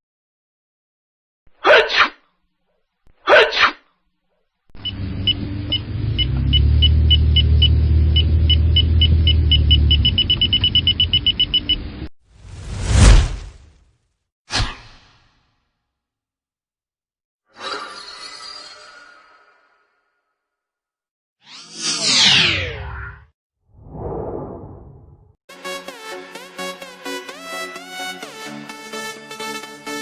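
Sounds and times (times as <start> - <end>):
electronic detector beeps: 4.8 - 11.9
whoosh: 12.4 - 13.8, 23.8 - 25.3.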